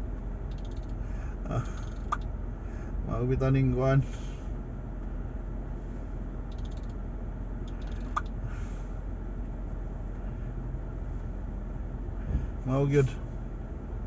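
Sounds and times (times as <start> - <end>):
car cabin rumble: 0.0 - 14.0
faint quick ticking: 0.5 - 1.0, 6.5 - 7.0, 7.7 - 8.4.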